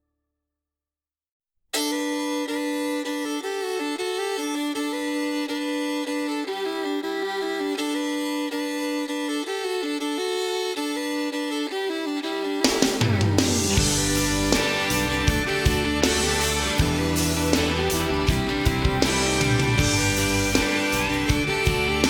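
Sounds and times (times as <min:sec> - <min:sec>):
country song with fiddle: 0:01.8 - 0:22.0.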